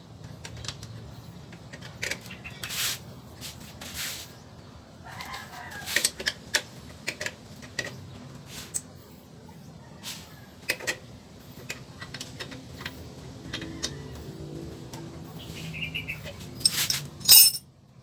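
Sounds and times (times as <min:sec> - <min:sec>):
metallic clicks and knocks of tools: 0:16.6 - 0:17.6.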